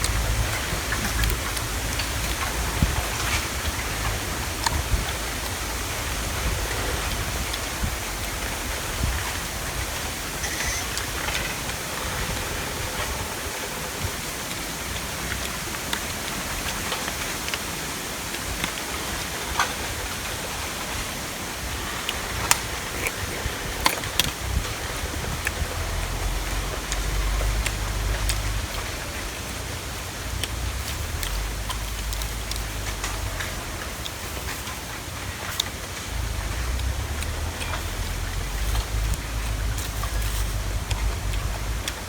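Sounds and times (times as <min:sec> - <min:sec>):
sharp clicks and ticks: 0:00.0 - 0:13.2, 0:21.7 - 0:42.0
steady rushing noise: 0:00.0 - 0:42.0.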